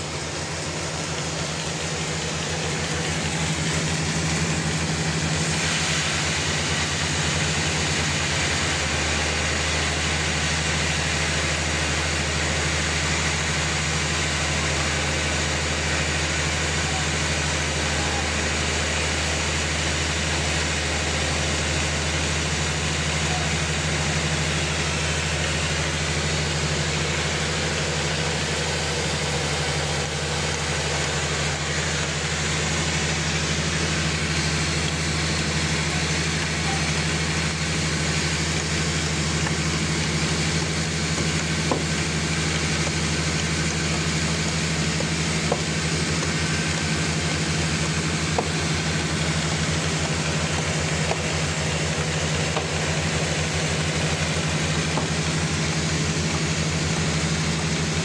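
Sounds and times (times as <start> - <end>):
sawmill humming: 0.0 - 58.0.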